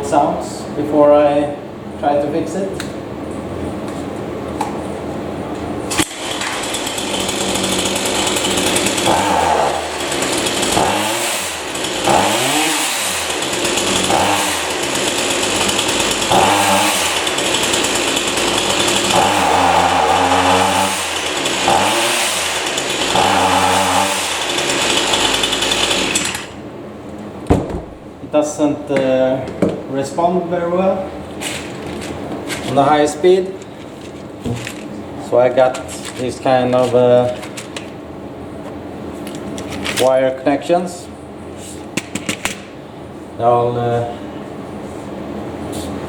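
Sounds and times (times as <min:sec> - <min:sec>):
chainsaw engine revving: 0:05.9 - 0:26.6.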